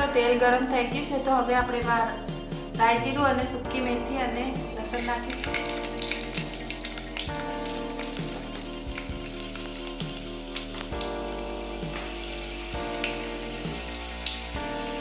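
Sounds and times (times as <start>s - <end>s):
spices sizzling and popping in oil: 4.9s - 15.0s.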